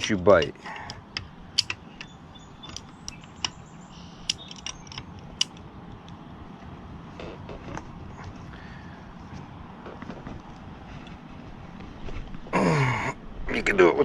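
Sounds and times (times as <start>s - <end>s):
pliers metal clicks: 0.0s - 3.6s, 4.2s - 5.6s
pipe creaking: 7.1s - 8.5s.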